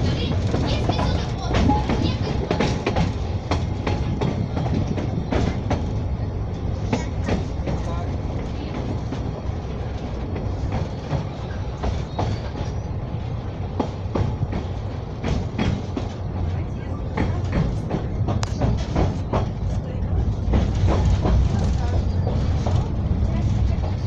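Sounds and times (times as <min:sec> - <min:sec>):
wheels clicking over rail joints: 0:00.0 - 0:12.9, 0:13.7 - 0:24.0
train running gear rumbling: 0:00.0 - 0:24.0.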